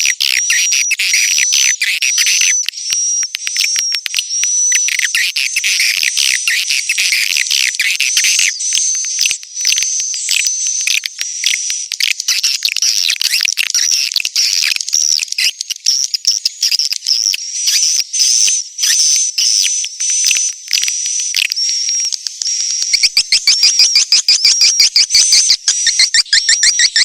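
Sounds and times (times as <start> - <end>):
swiftlets twittering: 22.8 - 27.0.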